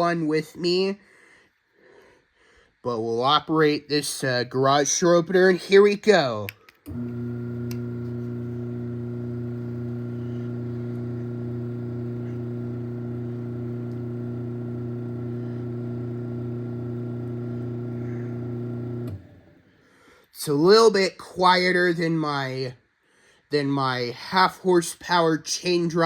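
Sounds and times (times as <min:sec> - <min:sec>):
garage door opener motor hum: 0:06.9 - 0:19.6.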